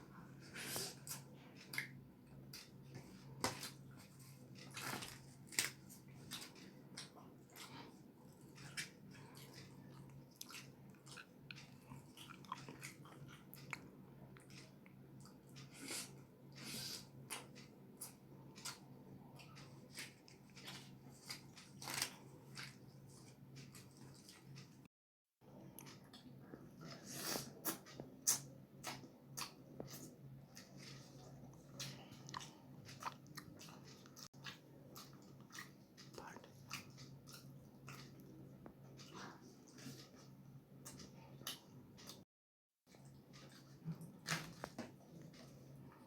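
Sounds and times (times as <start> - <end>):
chewing with wet mouth smacks: 5.5 - 16.0, 27.6 - 38.4.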